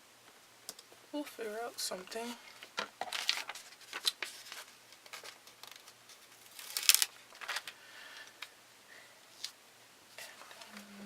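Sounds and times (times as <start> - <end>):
paper rustling scrape: 3.1 - 7.7.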